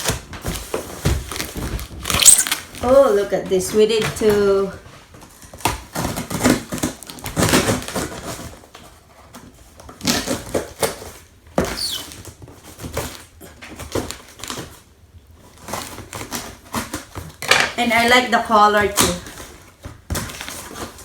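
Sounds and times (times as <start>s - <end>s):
packaging rustling and crinkling: 0.0s - 17.5s, 18.1s - 21.0s
brief squeak: 2.2s - 2.6s, 11.7s - 12.2s.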